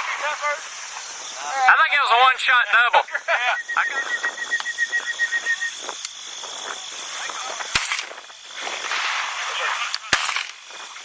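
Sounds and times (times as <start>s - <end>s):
shotgun shot: 7.7s - 8.2s, 8.8s - 10.9s.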